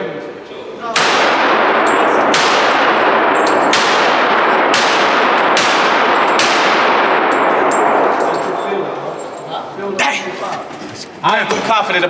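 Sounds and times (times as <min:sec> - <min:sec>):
gunshots ringing out: 0:00.8 - 0:09.3.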